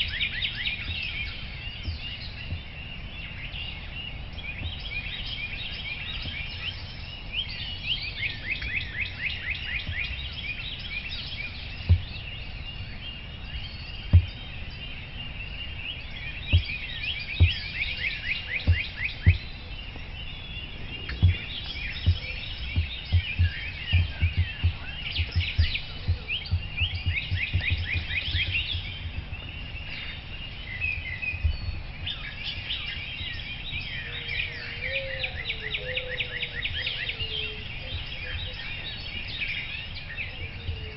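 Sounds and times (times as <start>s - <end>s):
songbirds chirping and trilling: 0.0s - 40.9s
low thumps: 11.8s - 12.3s, 14.1s - 14.4s, 16.5s - 18.0s, 18.6s - 29.6s.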